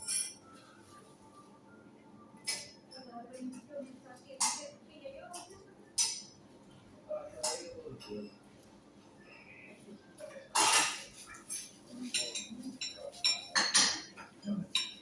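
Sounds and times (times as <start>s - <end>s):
cutlery clinking on plates: 0.0s - 0.6s, 2.4s - 3.7s, 4.4s - 6.4s, 7.3s - 8.4s, 10.2s - 15.0s.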